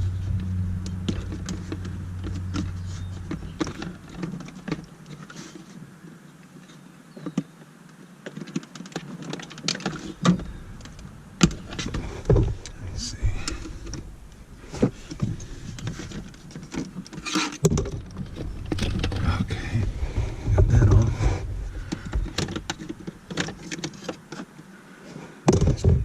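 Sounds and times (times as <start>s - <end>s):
low steady hum: 0.0s - 6.4s, 9.8s - 23.9s.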